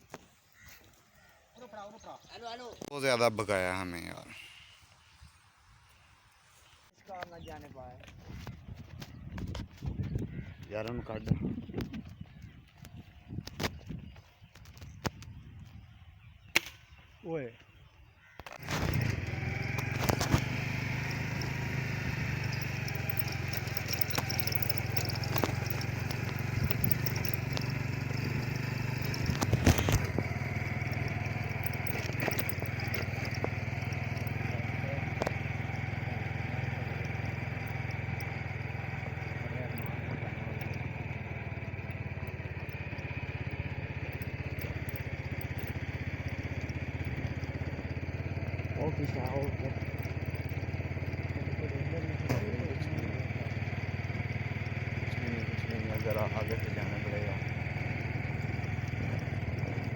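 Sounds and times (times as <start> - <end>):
motorcycle engine running: 7.4 - 16.4, 18.2 - 59.9
sharp knocks and rattles: 18.4 - 51.4.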